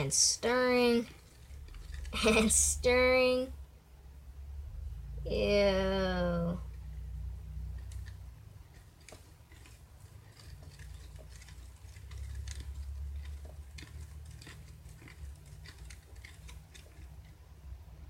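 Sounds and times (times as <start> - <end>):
low steady hum: 0.0 - 18.0
slime squelching and clicking: 7.7 - 17.4.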